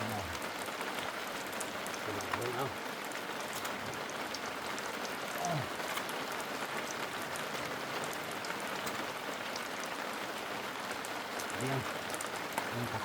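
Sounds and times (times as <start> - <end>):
heavy rain falling: 0.0 - 13.0
low falling vocal sound: 5.3 - 5.8.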